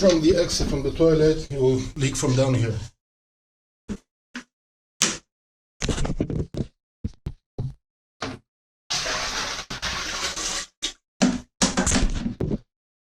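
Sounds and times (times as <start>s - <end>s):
water poured into toilet bowl: 8.9s - 10.8s.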